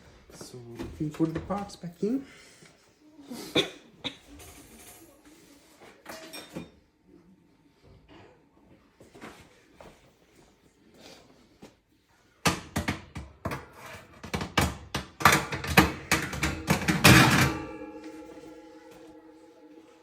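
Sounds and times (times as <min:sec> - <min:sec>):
metal oven parts clanking: 0:15.2 - 0:20.0
metal ringing: 0:15.8 - 0:20.0.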